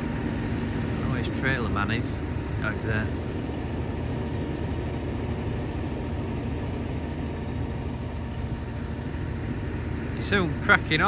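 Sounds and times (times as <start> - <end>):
tractor engine hum: 0.0 - 11.0.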